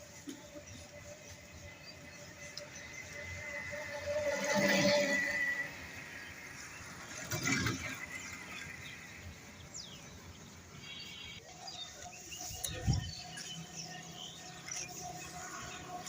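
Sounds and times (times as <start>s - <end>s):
birds chirping and calling: 10.8s - 16.0s.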